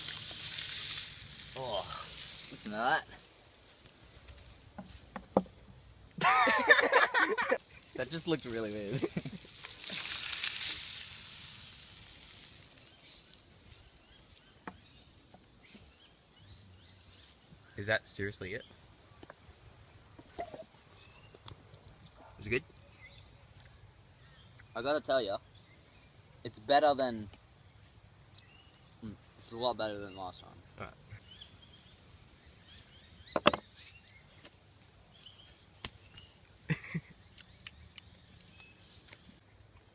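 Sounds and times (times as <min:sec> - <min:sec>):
fish sizzling in a pan: 0:00.0 - 0:03.5, 0:07.6 - 0:13.9
birds chirping: 0:12.8 - 0:26.7, 0:27.6 - 0:34.4, 0:35.1 - 0:39.6.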